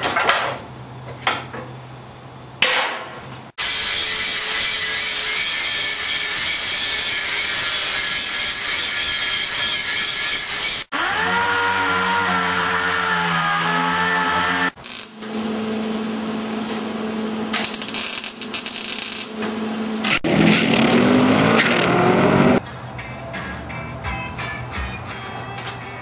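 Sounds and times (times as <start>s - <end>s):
tool motor whine: 3.6s - 15.4s
tool hum: 3.6s - 20.3s.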